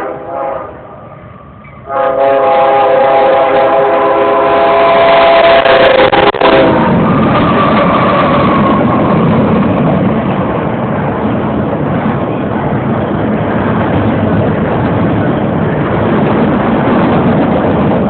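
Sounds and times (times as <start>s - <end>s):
multi-chime train horn: 0.0s - 0.8s, 1.9s - 6.9s
freight train rumbling past: 0.0s - 18.0s.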